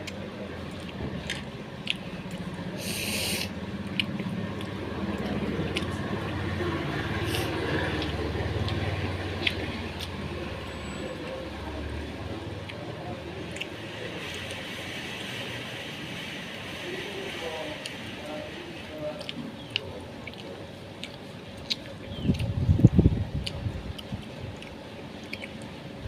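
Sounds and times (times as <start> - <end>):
mouth clicks and smacks: 0.0 - 10.6, 12.5 - 14.7, 19.0 - 26.0
person chewing food: 0.0 - 11.4, 12.2 - 14.6, 19.0 - 26.0
short hiss: 2.8 - 3.5.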